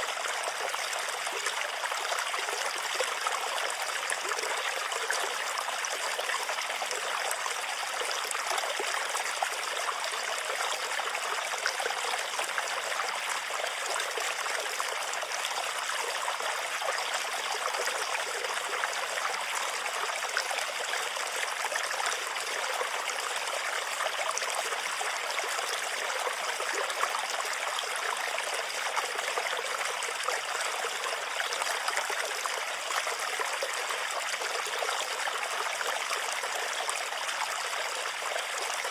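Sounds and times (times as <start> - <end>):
stream water rushing and splashing: 22.2 - 38.9.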